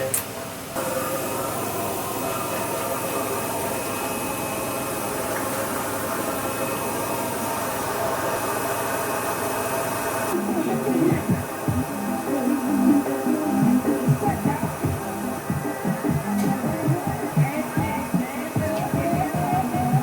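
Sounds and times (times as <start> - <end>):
machine hum with hiss: 0.0 - 20.0.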